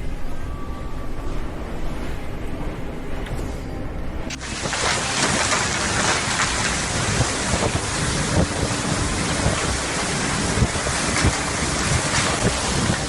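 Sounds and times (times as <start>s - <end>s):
waves breaking on rough sea: 4.3s - 13.0s
wind buffeting microphone: 4.3s - 13.0s.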